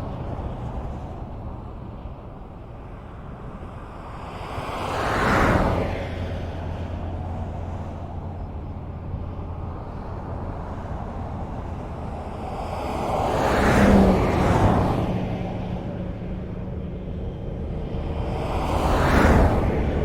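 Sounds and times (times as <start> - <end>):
highway traffic noise: 0.0 - 20.0
vehicle passing by: 4.1 - 20.0.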